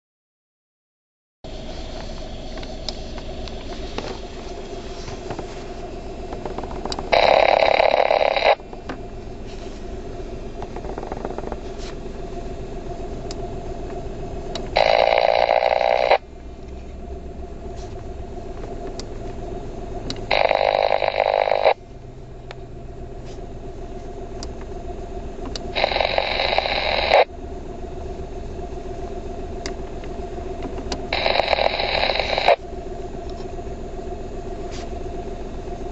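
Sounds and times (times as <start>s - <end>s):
radio static hum: 1.5s - 35.9s
loud bursts of static: 6.4s - 8.6s, 14.7s - 16.2s, 20.3s - 21.8s, 25.7s - 27.3s, 31.1s - 32.6s.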